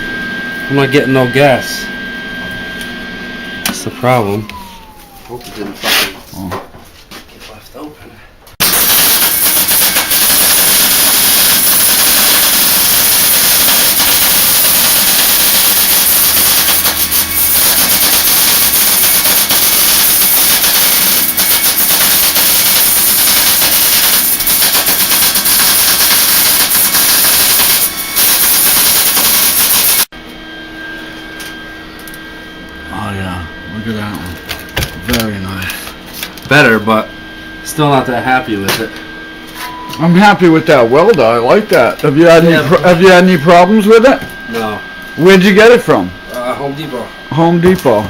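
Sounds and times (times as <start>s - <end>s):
welder arc crackling and hissing: 8.5s - 30.1s.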